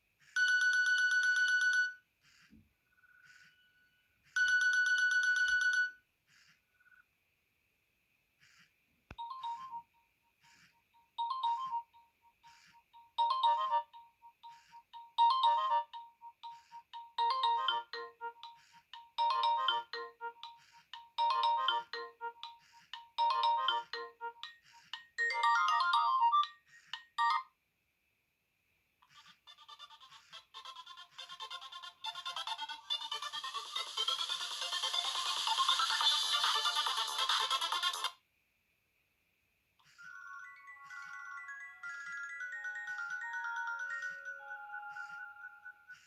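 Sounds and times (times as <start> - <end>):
polyphonic phone ringtone: 0.4 - 2.0, 4.4 - 6.0, 9.2 - 27.5, 29.6 - 38.2, 39.8 - 46.0.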